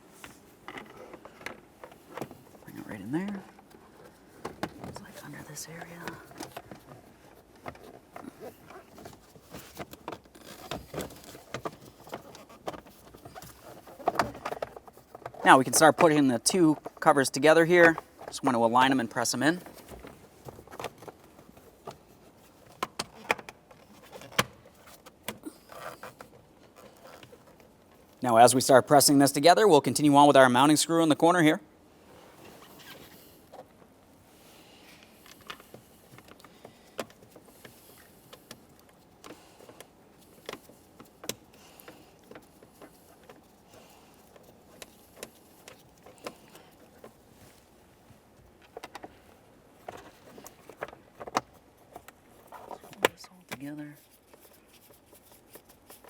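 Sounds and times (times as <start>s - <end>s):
handling rustle: 0.0s - 17.0s, 32.0s - 56.0s.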